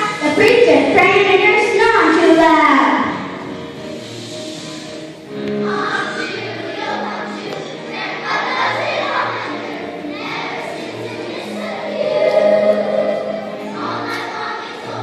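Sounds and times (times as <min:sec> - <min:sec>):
choir singing: 0:05.3 - 0:15.0.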